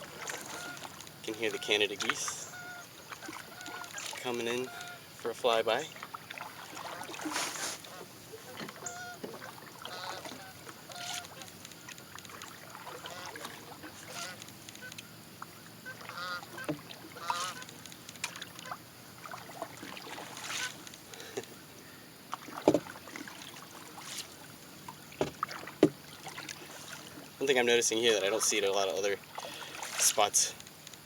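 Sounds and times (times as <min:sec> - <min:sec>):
geese honking: 0:00.3 - 0:05.1, 0:08.8 - 0:11.5, 0:12.9 - 0:14.9, 0:15.8 - 0:17.8.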